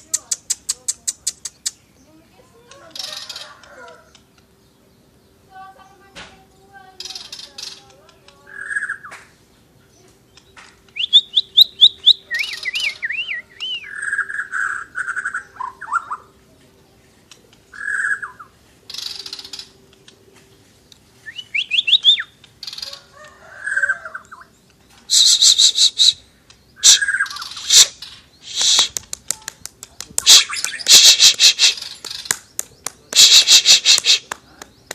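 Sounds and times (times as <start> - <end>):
songbird singing whistles: 10.9 - 16.3, 17.7 - 18.5, 21.2 - 22.4, 25.1 - 29.0, 30.2 - 32.3.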